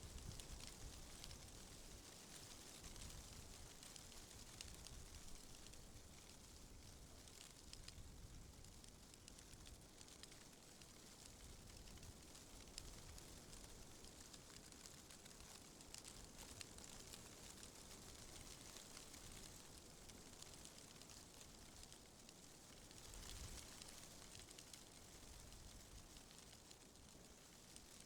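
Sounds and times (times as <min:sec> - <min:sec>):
wind rustling tree leaves: 0:00.0 - 0:28.0.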